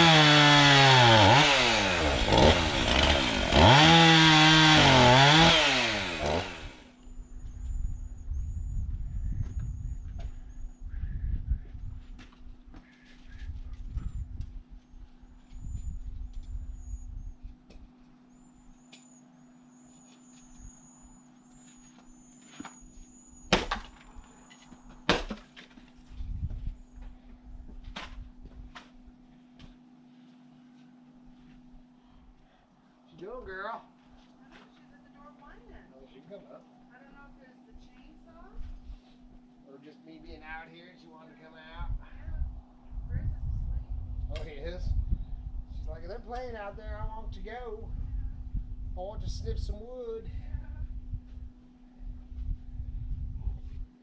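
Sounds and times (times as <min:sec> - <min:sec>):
chainsaw cutting wood: 0:00.0 - 0:06.9.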